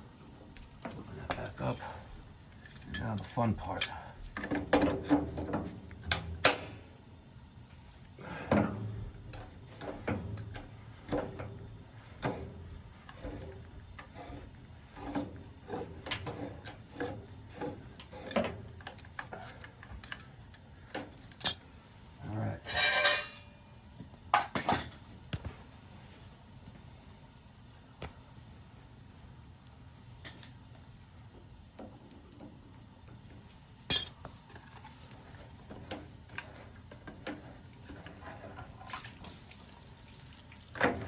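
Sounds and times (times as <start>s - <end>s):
metal tools clinking and knocking: 2.6s - 5.2s, 22.6s - 23.5s, 24.4s - 25.0s, 33.9s - 34.2s
metal scraping: 22.6s - 23.5s.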